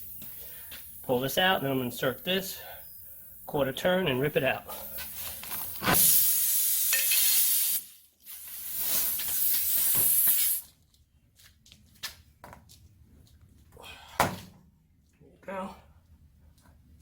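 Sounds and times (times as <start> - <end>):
air hissing from tire: 0.0 - 1.6, 2.4 - 3.5, 4.7 - 10.6.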